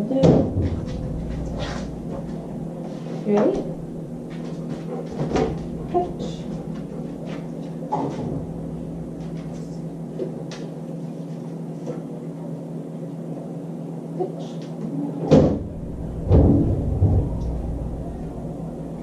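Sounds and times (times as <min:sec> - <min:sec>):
bumping and rattling: 0:00.0 - 0:09.8, 0:15.4 - 0:19.0
refrigerator door thud: 0:15.3 - 0:17.4.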